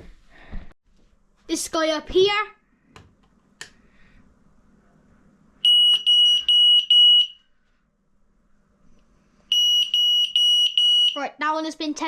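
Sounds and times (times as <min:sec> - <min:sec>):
alarm high-pitched beeps: 0:05.6 - 0:07.4, 0:09.5 - 0:11.2.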